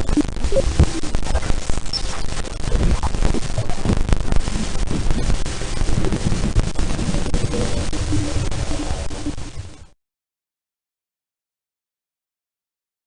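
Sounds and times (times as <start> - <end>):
loud crackling static: 0.0 - 10.0
low rumble: 0.0 - 10.0.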